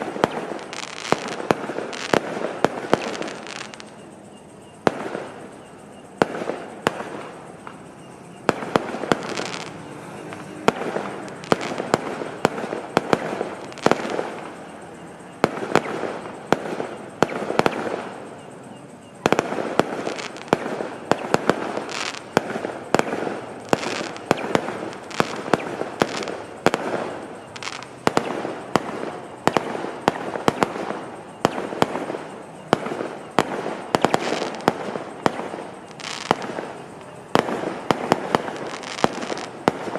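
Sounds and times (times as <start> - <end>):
fireworks bangs: 0.0 - 39.9
fireworks crackling: 0.0 - 39.9.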